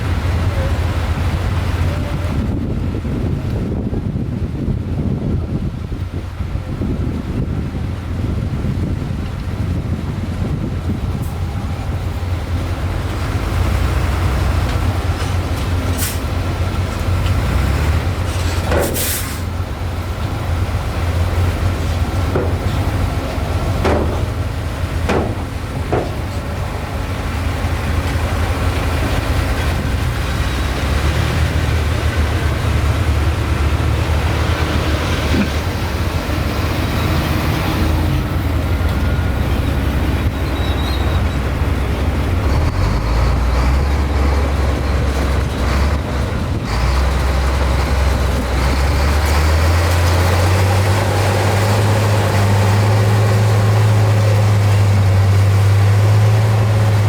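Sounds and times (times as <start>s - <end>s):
diesel machinery rumble: 0.0s - 57.0s
sharp clanks and squeaks: 40.3s - 41.6s.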